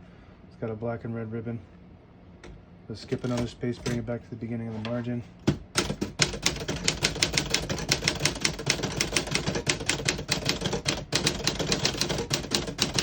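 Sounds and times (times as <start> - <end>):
typewriter keys striking: 3.1 - 4.0, 5.5 - 13.0.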